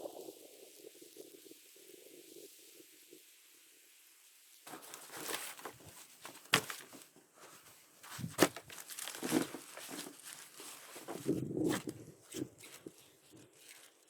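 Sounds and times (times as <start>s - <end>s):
crinkling and rustling: 4.7s - 14.0s.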